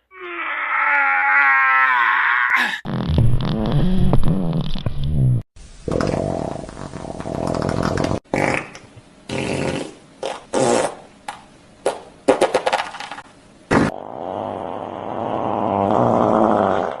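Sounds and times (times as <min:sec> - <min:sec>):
fart sound effect: 0:02.8 - 0:11.0, 0:11.8 - 0:14.0.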